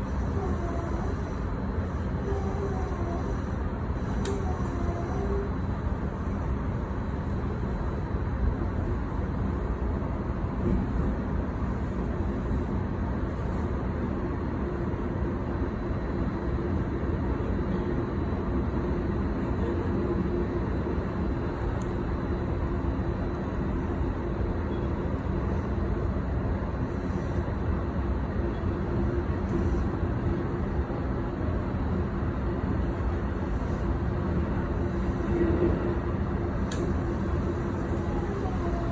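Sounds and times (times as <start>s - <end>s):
faint steady hum: 0.0s - 38.9s
train carriage rumble: 0.0s - 38.9s.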